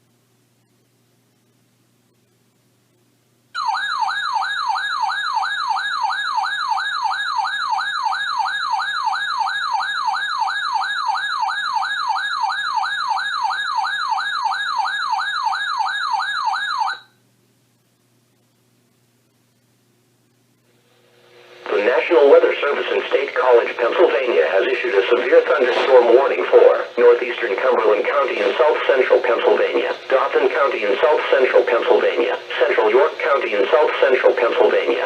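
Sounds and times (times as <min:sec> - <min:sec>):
electronic warbling siren alarm: 0:03.6 - 0:17.1.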